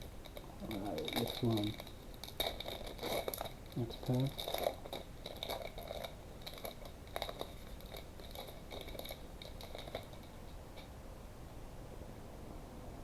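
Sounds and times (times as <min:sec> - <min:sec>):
foil card pack crinkling: 0:00.2 - 0:10.3.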